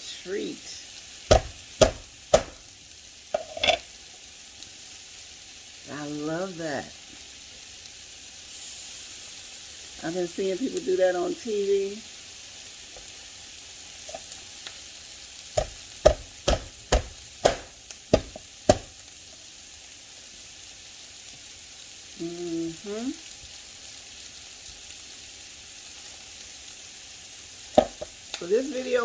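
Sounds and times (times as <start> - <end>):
chicken sizzling in a pan: 0.0 - 29.0
utensil knocking against pan: 1.3 - 2.6, 3.4 - 3.8, 15.6 - 19.0, 27.8 - 28.1.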